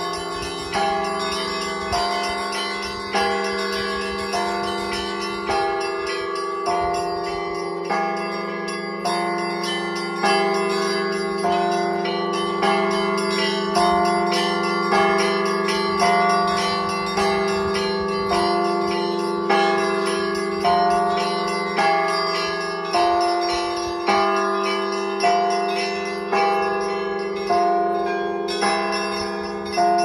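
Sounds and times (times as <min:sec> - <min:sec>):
church bells pealing: 0:00.0 - 0:30.0.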